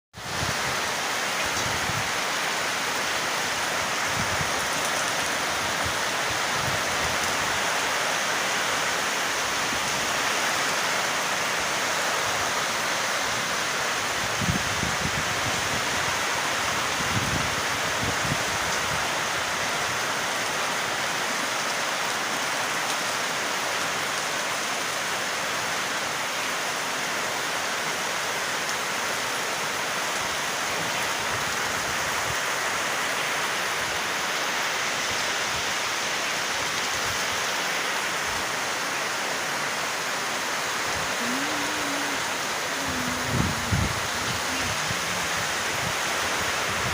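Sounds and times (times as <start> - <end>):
heavy rain falling: 0.1 - 46.9
short pitched voice-like sound: 41.2 - 43.8.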